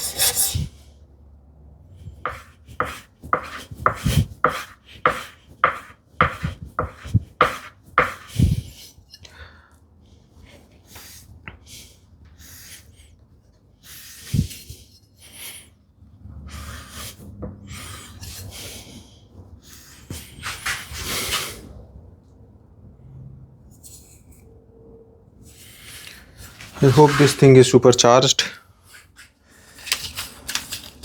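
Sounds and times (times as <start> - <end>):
blade rasping on abrasive: 0.0 - 0.7.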